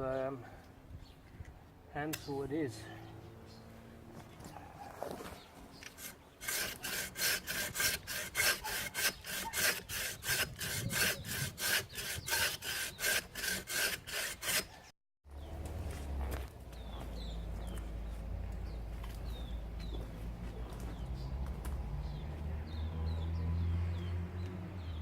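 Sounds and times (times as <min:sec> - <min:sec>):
handsaw cutting wood: 0:05.8 - 0:14.9.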